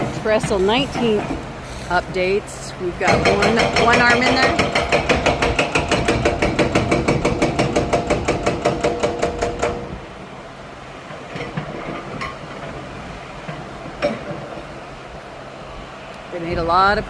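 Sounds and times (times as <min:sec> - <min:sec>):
hydraulic breaker pounding concrete: 0:03.0 - 0:10.0.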